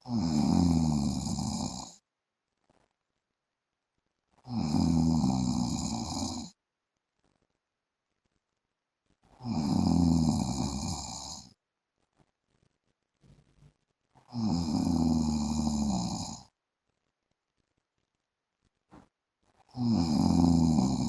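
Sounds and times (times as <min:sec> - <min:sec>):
man snoring: 0:00.0 - 0:02.0, 0:04.5 - 0:06.6, 0:09.4 - 0:11.5, 0:14.3 - 0:16.5, 0:19.7 - 0:21.0.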